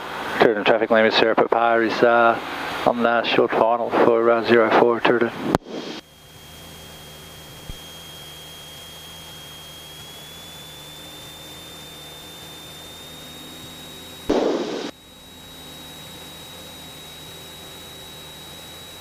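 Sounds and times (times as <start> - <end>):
aircraft engine droning: 0.0 - 19.0
steady high whine: 0.0 - 19.0
burst of static noise: 5.1 - 6.0, 14.3 - 15.0.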